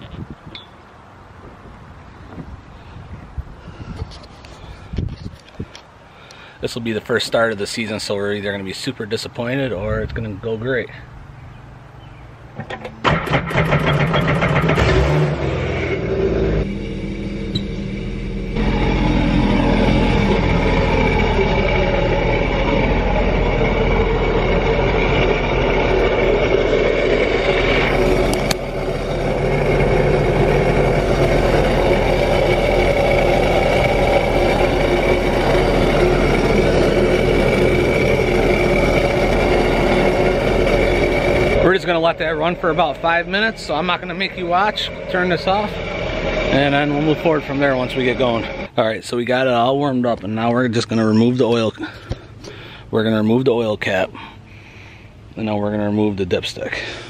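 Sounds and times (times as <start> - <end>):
starter cranking engine: 12.6 - 48.8
personal watercraft engine running: 13.0 - 48.8.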